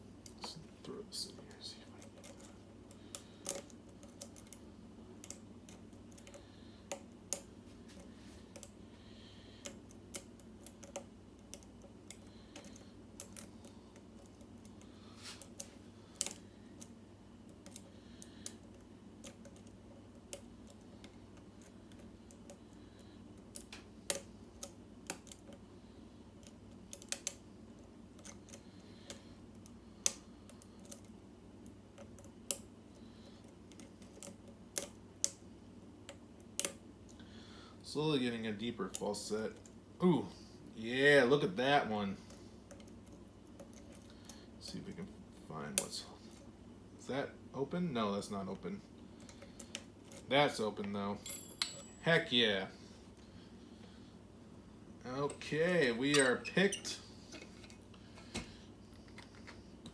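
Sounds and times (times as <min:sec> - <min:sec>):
faint steady hum: 0:00.0 - 0:59.9
lock pick clicking and tapping: 0:26.4 - 0:27.4, 0:36.1 - 0:36.8.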